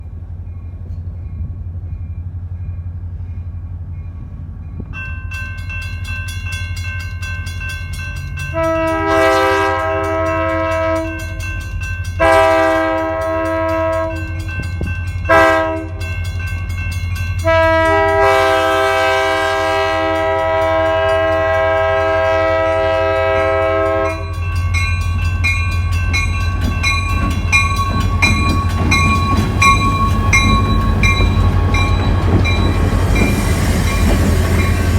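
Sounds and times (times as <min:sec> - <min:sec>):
locomotive air horn blasts: 0:08.5 - 0:11.3, 0:12.2 - 0:14.4, 0:15.3 - 0:16.0, 0:17.4 - 0:24.3.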